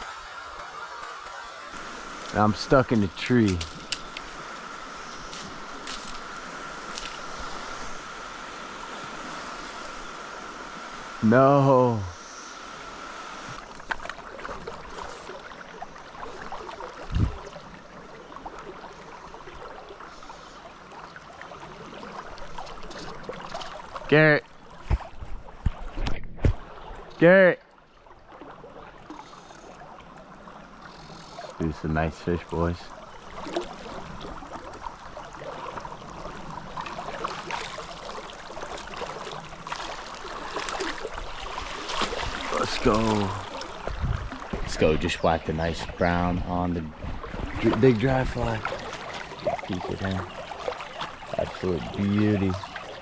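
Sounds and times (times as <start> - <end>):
stream gurgling over rocks: 0.0 - 25.0, 31.5 - 53.0
small water splashes: 13.1 - 31.6, 32.5 - 53.0
stream rushing over rocks: 36.9 - 44.8.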